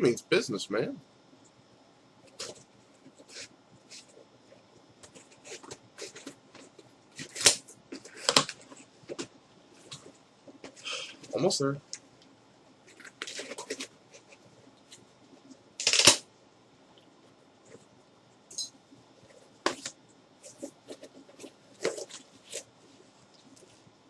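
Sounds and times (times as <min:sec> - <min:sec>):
cardboard rustling and crinkling: 0:12.9 - 0:15.0, 0:19.2 - 0:23.8.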